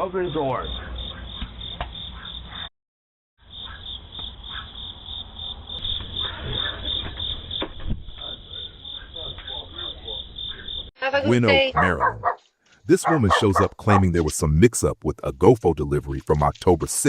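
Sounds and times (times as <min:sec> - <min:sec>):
crickets chirping: 0:00.0 - 0:02.6, 0:03.4 - 0:12.1.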